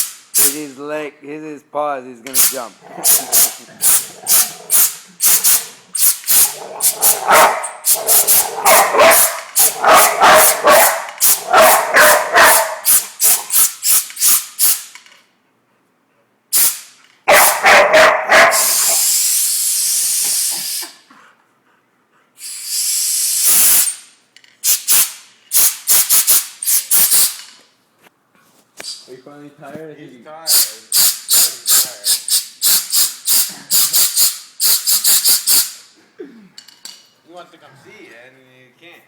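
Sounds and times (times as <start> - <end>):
air gun puffs: 0.0 - 0.7, 2.3 - 15.2, 16.5 - 17.6, 18.4 - 21.1, 22.4 - 27.6, 30.5 - 36.0
hissing blasts of air: 0.0 - 0.7, 2.3 - 15.0, 16.5 - 17.6, 18.4 - 21.0, 22.4 - 27.5, 30.5 - 35.9
dog barking rapidly: 3.0 - 5.7, 6.4 - 13.6, 17.3 - 19.0.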